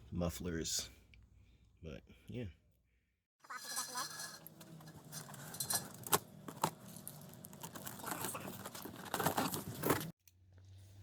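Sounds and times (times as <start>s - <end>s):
packaging crinkling and rustling: 4.9s - 10.1s.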